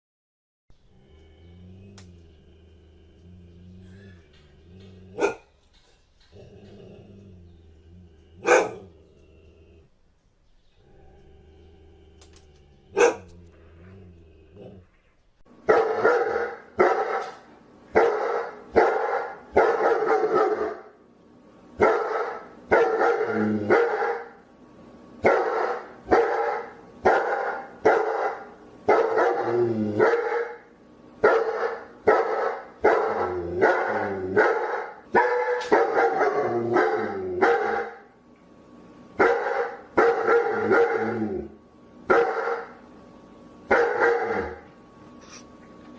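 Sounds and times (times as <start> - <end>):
dog barking: 5.2 - 5.5, 8.4 - 8.9, 13.0 - 13.3, 15.7 - 17.4, 18.0 - 20.9, 21.8 - 24.4, 25.2 - 30.6, 31.2 - 38.1, 39.2 - 41.1, 42.1 - 42.8, 43.7 - 44.6.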